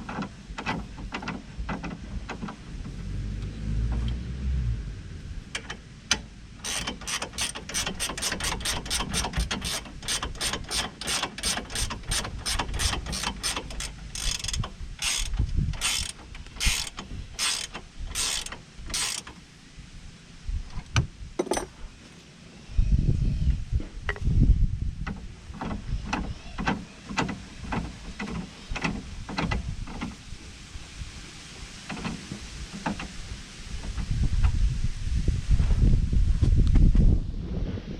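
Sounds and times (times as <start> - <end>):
ratchet wrench clicking: 5.6 - 19.4.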